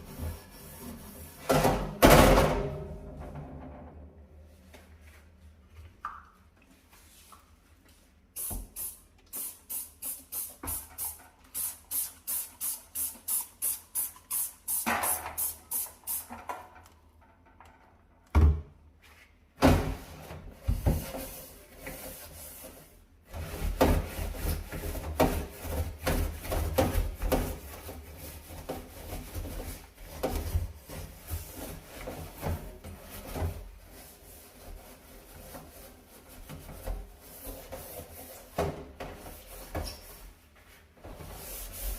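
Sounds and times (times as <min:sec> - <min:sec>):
brush scrubbing oven: 0:00.0 - 0:01.9, 0:20.0 - 0:41.9.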